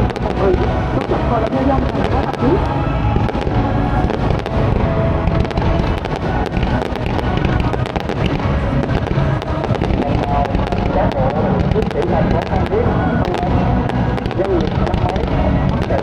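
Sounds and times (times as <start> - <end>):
fireworks bangs and crackles: 0.0 - 16.0
low rumble of bursts: 0.0 - 16.0
music playing: 0.0 - 16.0.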